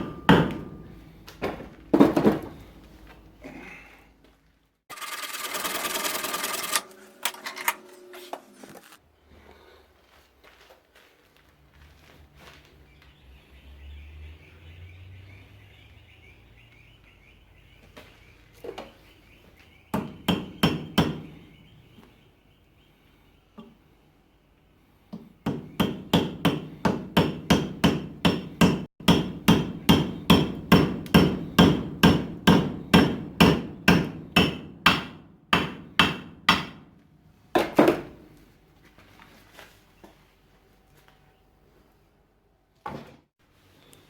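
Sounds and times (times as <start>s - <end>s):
hammer striking hot steel on anvil: 0.0s - 0.9s, 25.5s - 36.8s.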